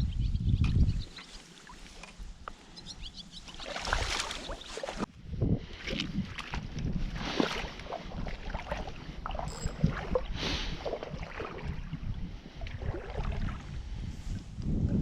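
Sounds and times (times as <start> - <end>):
wind rumble on microphone: 0.0 - 1.2, 5.0 - 15.0
water sloshing and splashing: 3.4 - 14.1.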